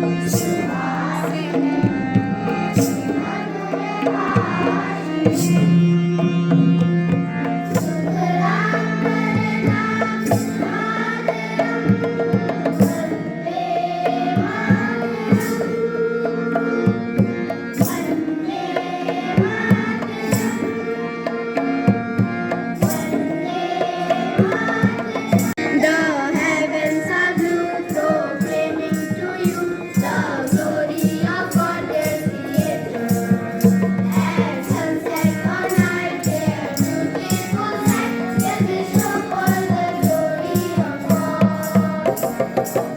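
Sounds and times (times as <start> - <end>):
held drone: 0.0 - 42.9
tabla drumming: 0.0 - 42.9.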